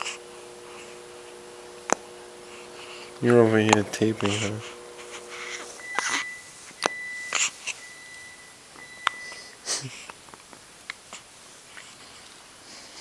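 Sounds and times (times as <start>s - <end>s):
baby hiccupping: 5.1s - 7.5s.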